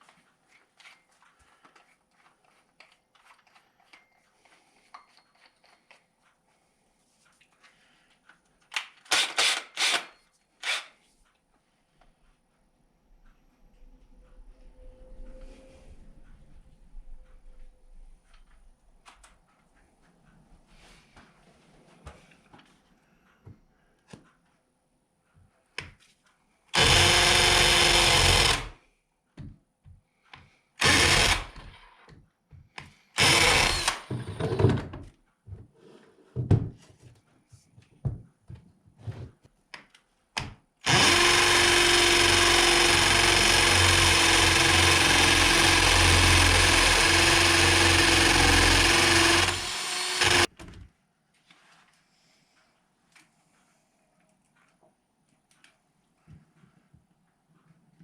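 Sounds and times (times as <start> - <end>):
power drill boring: 9.1 - 10.9, 26.7 - 28.8, 30.8 - 31.8, 33.2 - 34.4, 40.8 - 50.5.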